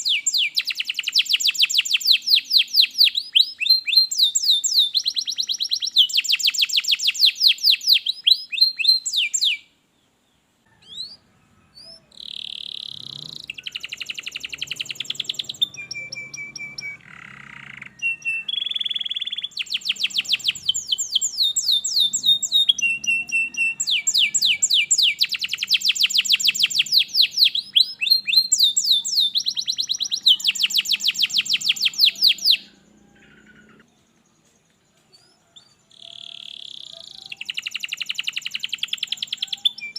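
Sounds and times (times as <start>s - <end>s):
canary singing trills: 0.0s - 9.7s, 10.7s - 39.9s.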